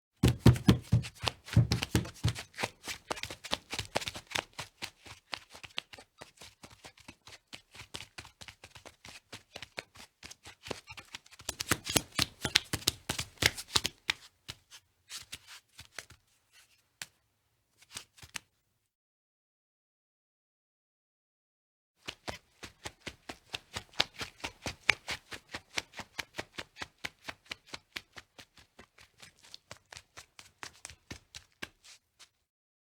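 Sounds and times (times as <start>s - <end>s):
footsteps: 0.2s - 14.7s.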